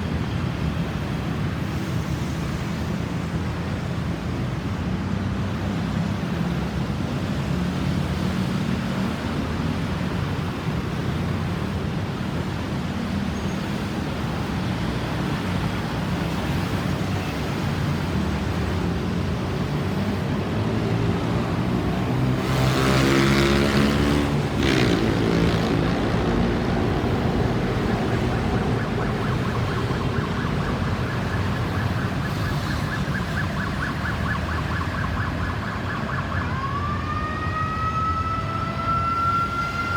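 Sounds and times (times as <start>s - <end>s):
road traffic passing: 0.0s - 39.9s
faint emergency siren: 13.3s - 39.9s
vehicle passing close: 21.4s - 32.8s.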